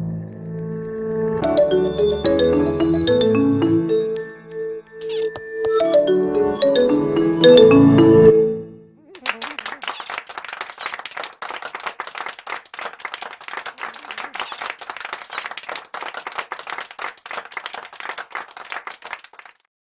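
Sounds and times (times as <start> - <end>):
many hands clapping: 9.1 - 19.7.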